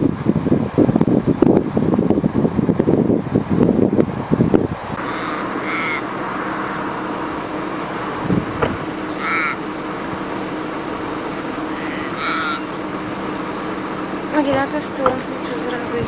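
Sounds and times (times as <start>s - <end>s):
wind rumble on microphone: 0.0s - 12.3s, 13.0s - 16.0s
crow cawing: 5.0s - 6.1s, 9.0s - 9.7s, 11.6s - 12.8s.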